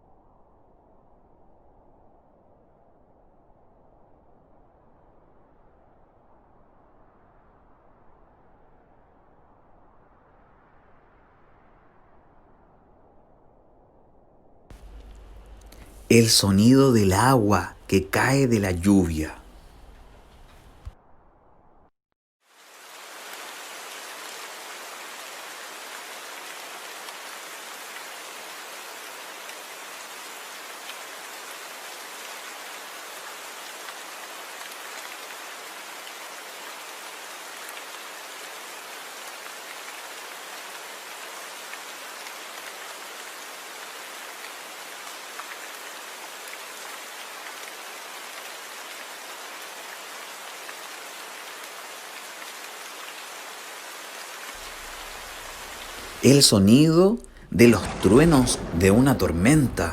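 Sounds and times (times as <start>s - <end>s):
raindrops ticking: 14.7s - 20.9s, 54.6s - 59.9s
rain falling: 14.7s - 21.0s, 22.5s - 59.9s.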